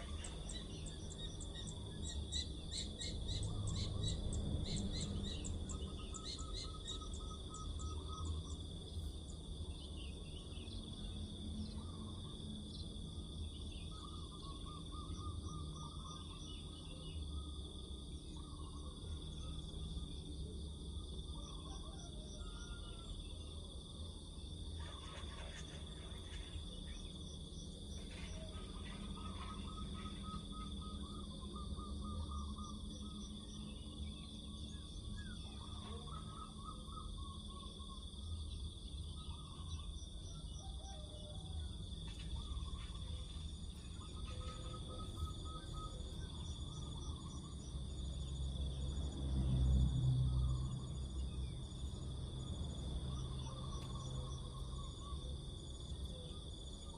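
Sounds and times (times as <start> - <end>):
birds chirping: 0.0 - 20.2, 41.9 - 49.0
crickets droning: 0.0 - 56.9.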